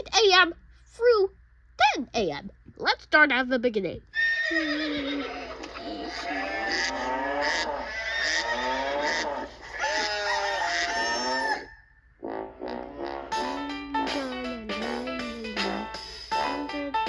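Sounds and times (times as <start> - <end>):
chickens crowing and clucking: 7.8 - 11.8.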